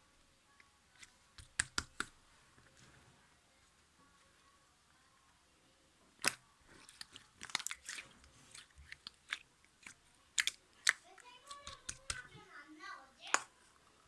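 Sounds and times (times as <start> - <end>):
sticky wet gel clicks and pops: 1.4 - 2.2, 6.2 - 12.3.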